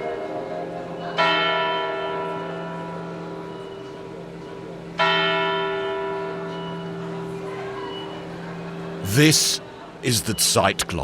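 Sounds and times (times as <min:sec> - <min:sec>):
tower clock bell striking: 0:05.0 - 0:07.3.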